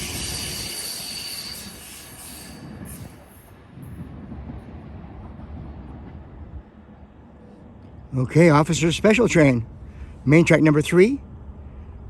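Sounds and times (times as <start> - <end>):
high wheel squeal: 0.0 - 3.6
train wheels rumbling on rail: 0.0 - 12.0.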